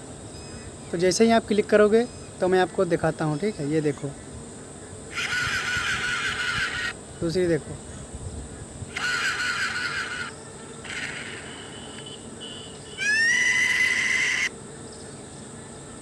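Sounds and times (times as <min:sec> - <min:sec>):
whistle sliding up: 0:10.9 - 0:12.2, 0:13.0 - 0:14.5.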